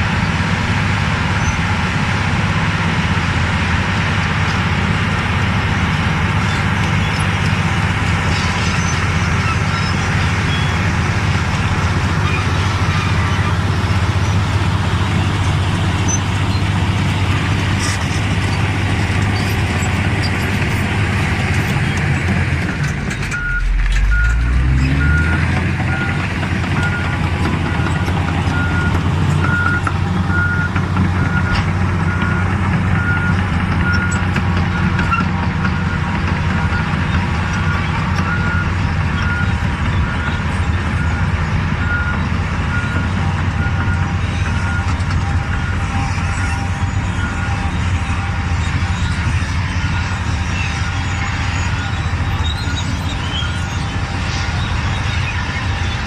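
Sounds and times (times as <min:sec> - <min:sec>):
bulldozer diesel engine: 0:00.0 - 0:56.0
reverse alarm beeping: 0:23.3 - 0:26.2.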